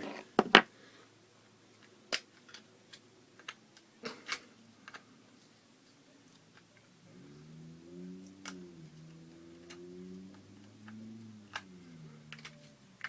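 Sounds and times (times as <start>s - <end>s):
small hard objects clicking: 9.6s - 13.0s.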